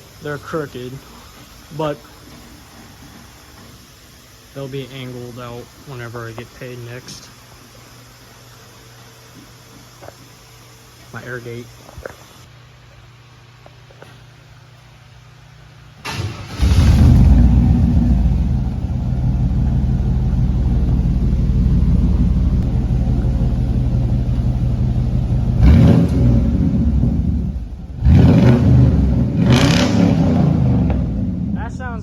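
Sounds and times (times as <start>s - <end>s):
truck engine cranking: 16.0s - 31.1s
engine revving: 16.1s - 31.9s
truck engine running loudly: 16.8s - 31.6s.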